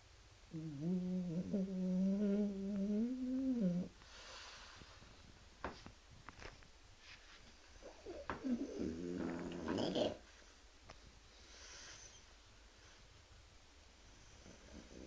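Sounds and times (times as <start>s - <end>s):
dog snoring: 0.5s - 3.9s, 7.8s - 10.2s, 14.2s - 15.0s.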